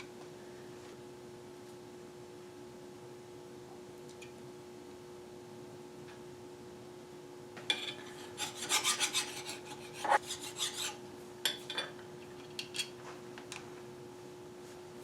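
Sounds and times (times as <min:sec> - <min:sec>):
faint steady hum: 0:00.0 - 0:15.0
scraping and rubbing on metal: 0:07.8 - 0:11.0.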